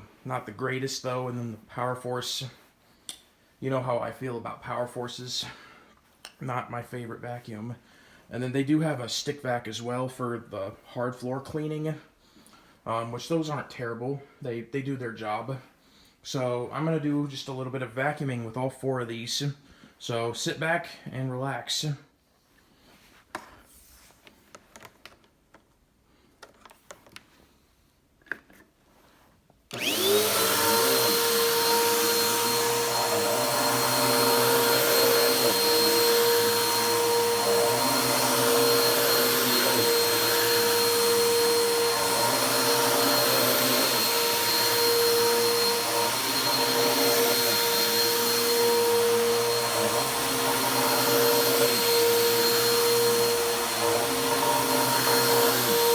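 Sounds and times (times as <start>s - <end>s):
vacuum cleaner motor whining: 29.7s - 55.9s.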